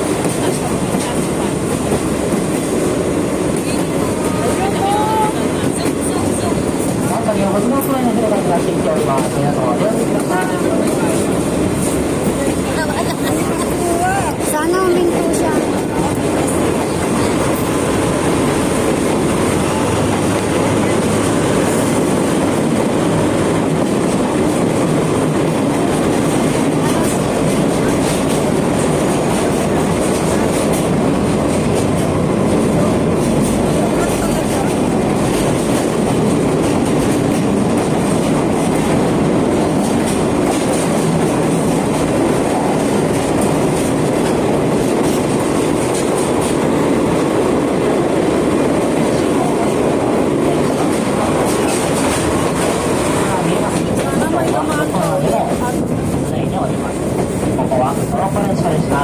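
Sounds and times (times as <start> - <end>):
rail joint clicks: 0.0 - 59.0
train wheels rumbling on rails: 0.0 - 59.0.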